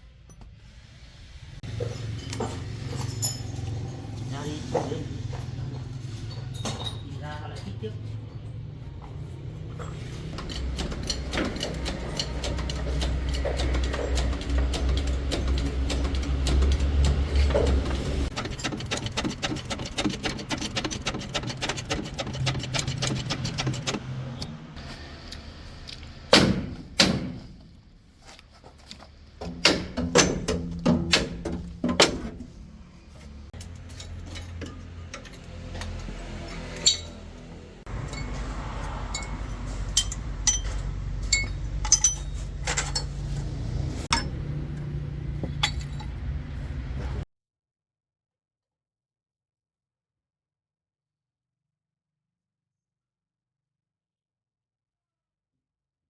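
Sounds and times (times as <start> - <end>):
sharp metal clinks: 1.8 - 4.0, 38.0 - 43.1
metallic rattle: 9.9 - 24.4, 33.6 - 46.7
loud metal clanks: 37.9 - 43.2.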